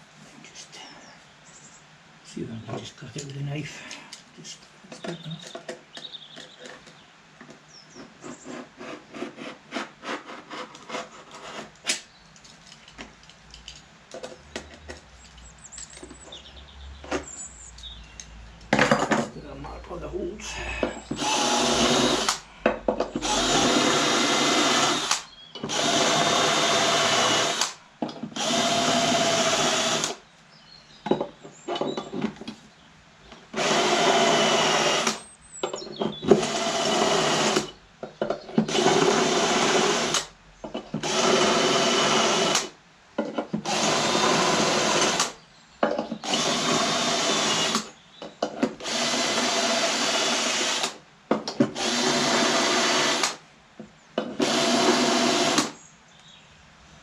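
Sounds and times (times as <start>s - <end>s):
electric drill running: 21.1s - 22.4s, 23.2s - 27.8s, 28.4s - 30.2s, 33.6s - 35.2s, 36.3s - 37.7s, 38.7s - 40.2s, 41.0s - 42.7s, 43.6s - 45.3s, 46.2s - 47.9s, 48.8s - 51.0s, 51.7s - 53.4s, 54.4s - 55.8s.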